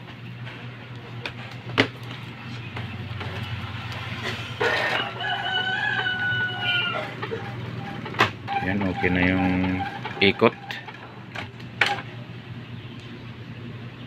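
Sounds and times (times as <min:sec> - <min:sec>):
inkjet printer running: 0:02.0 - 0:12.3
rooster crowing: 0:04.6 - 0:08.0
print-head carriage click: 0:07.2 - 0:12.1.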